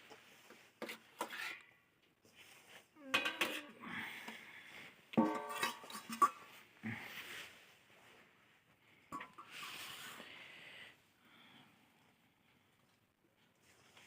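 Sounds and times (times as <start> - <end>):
metal utensils clinking: 3.1 - 3.8, 5.2 - 6.6
metal scraping: 5.2 - 6.6.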